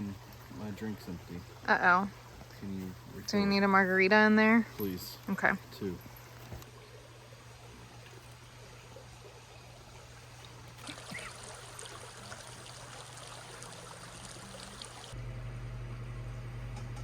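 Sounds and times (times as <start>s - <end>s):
stream trickling: 0.0s - 4.1s, 4.7s - 15.2s
steady low hum: 0.0s - 17.0s.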